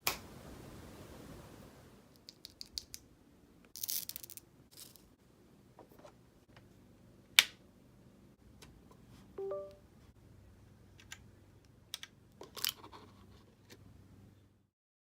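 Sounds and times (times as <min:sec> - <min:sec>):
small plastic clicks: 0:02.1 - 0:03.1.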